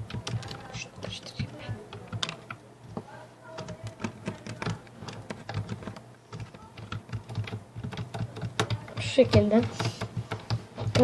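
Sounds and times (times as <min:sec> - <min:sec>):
stirrer clicking in glue: 0:03.5 - 0:11.0.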